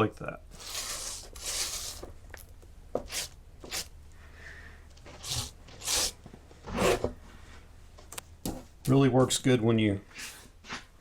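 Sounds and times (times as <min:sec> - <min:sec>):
wax roller rasping on plastic: 0:00.5 - 0:02.1, 0:05.1 - 0:07.1.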